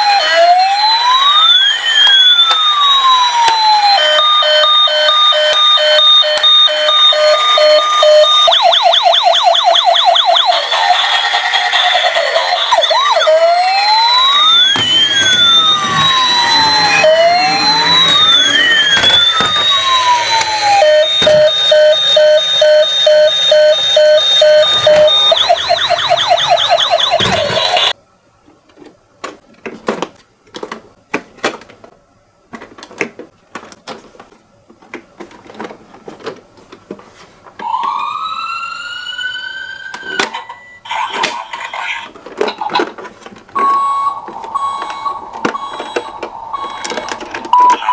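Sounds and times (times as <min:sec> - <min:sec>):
toy siren wailing and yelping: 0:00.0 - 0:28.0, 0:37.6 - 0:42.1, 0:43.6 - 0:47.9.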